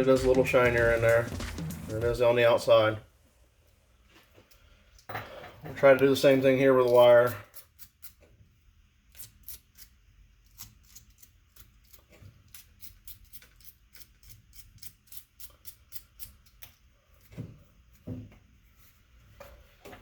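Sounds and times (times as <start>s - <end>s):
dull knocks: 0.0s - 2.4s.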